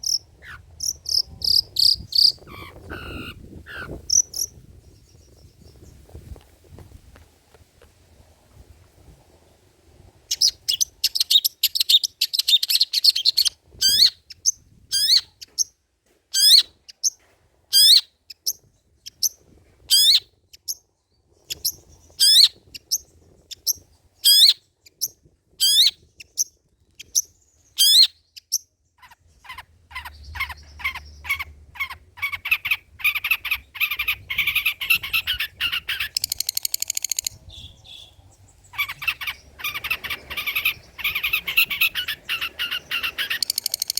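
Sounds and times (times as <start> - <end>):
shrike singing: 33.5 - 43.9.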